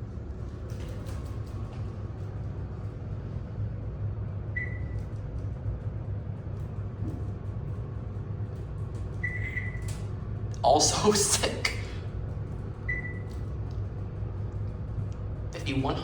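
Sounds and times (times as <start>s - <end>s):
elevator rumbling: 0.0s - 16.0s
short electronic beeps: 4.6s - 5.0s, 9.2s - 9.9s, 12.9s - 13.3s.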